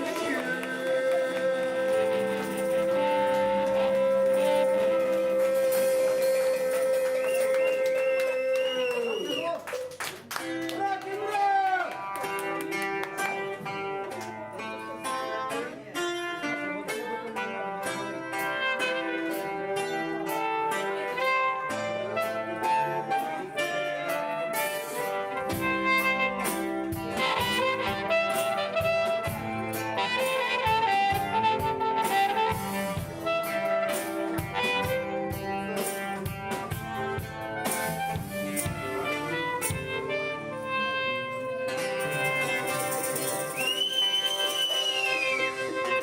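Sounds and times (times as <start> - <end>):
sustained melody line: 0.0 - 7.3
guitar chords: 0.0 - 8.6, 11.9 - 46.0
drums: 0.0 - 9.4, 18.2 - 46.0
bass: 0.0 - 9.5, 10.6 - 46.0.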